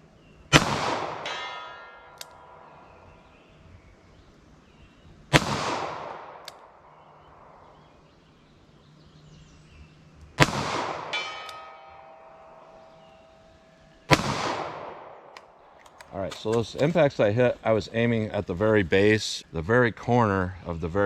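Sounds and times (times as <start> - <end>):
revolver shots with echo: 0.5 - 3.4, 5.3 - 7.6, 10.4 - 13.4, 14.0 - 15.3.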